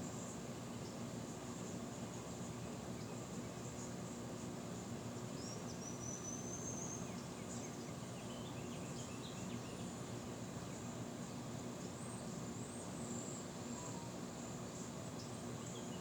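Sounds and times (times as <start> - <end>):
faint high chirps: 13.3 - 14.5
faint high whistle: 13.8 - 14.2.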